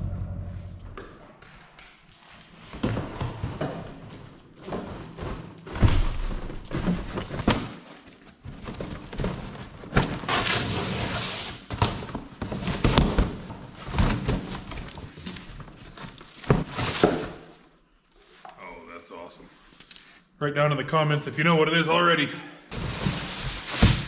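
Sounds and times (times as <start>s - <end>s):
scraping or rustling: 6.2s - 17.5s, 22.7s - 24.0s.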